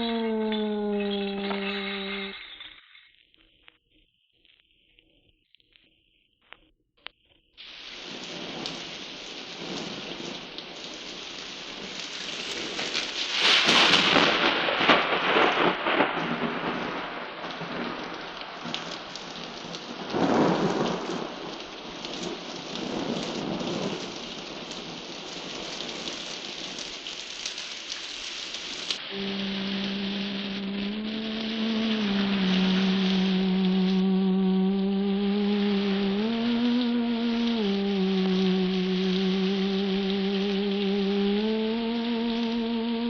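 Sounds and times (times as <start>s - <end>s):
heavy rain: 0.0s - 2.8s, 7.6s - 43.0s
low held tone: 0.0s - 2.8s, 29.1s - 43.0s
thunder rolling: 8.0s - 26.7s, 29.0s - 40.6s.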